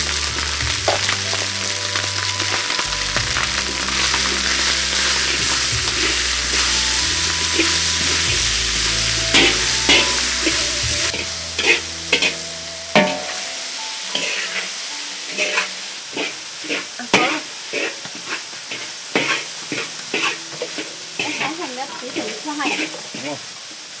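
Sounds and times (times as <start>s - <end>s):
food sizzling in a pan: 0.0s - 24.0s
utensil scraping and knocking pan: 15.4s - 23.4s.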